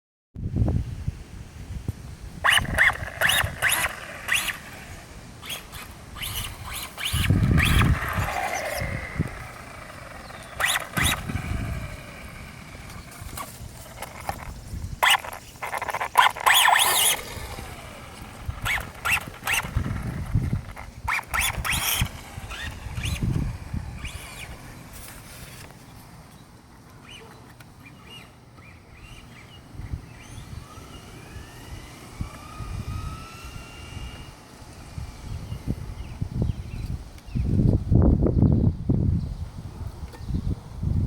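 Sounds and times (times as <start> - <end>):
toy truck electric motor whirring: 2.4 - 25.7, 27.0 - 36.8
rising motor whine: 2.4 - 25.8, 27.8 - 36.9.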